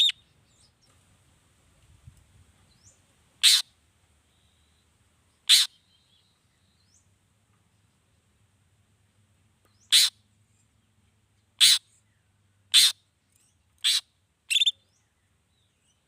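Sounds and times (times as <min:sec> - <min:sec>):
bird giving harsh calls: 0:03.4 - 0:03.7, 0:05.4 - 0:05.8, 0:09.8 - 0:10.2, 0:11.6 - 0:11.8, 0:12.7 - 0:13.0, 0:13.8 - 0:14.8.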